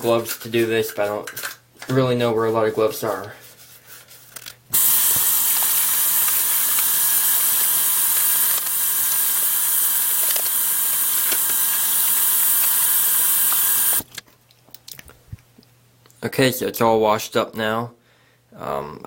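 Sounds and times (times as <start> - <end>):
water running from tap: 4.8 - 14.1.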